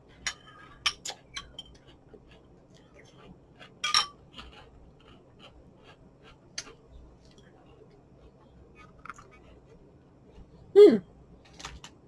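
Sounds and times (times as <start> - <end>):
spoon clinking against a bowl: 3.8 - 4.2.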